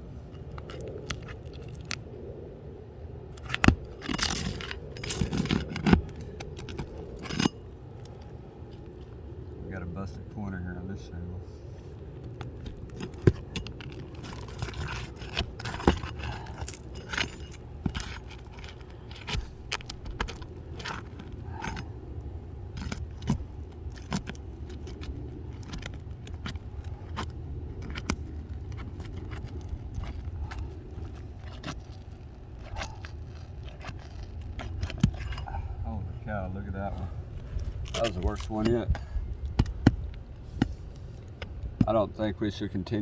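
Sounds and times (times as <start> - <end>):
metallic clinks and scrapes: 3.4 - 9.1, 12.2 - 35.7, 37.5 - 39.2
shingles tearing apart: 12.2 - 35.5.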